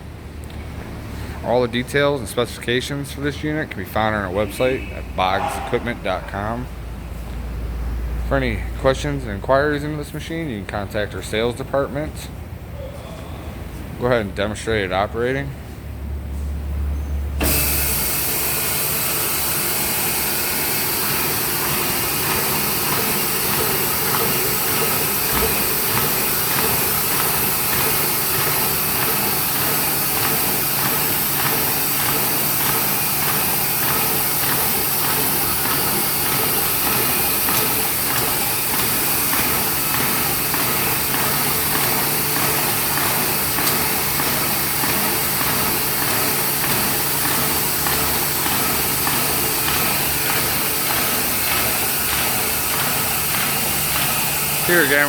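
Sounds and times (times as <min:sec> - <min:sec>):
paper folding machine whirring: 0:17.4 - 0:55.0.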